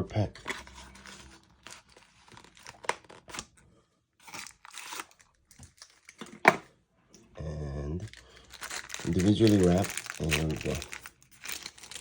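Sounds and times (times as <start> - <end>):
packaging tearing and crinkling: 0.4 - 3.6, 4.2 - 6.6, 8.1 - 12.0.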